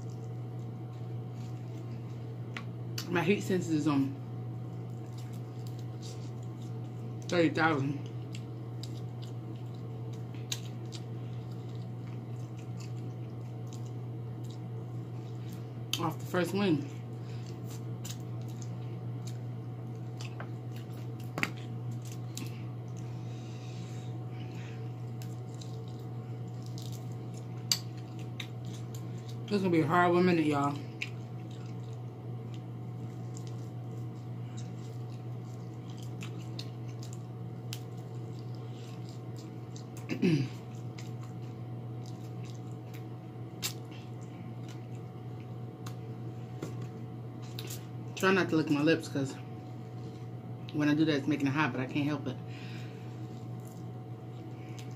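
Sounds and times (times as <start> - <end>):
low steady hum: 0.0 - 54.9
person chewing wet mouth sounds: 8.0 - 16.0, 16.9 - 23.1, 24.8 - 29.5, 30.9 - 46.0, 46.8 - 47.9.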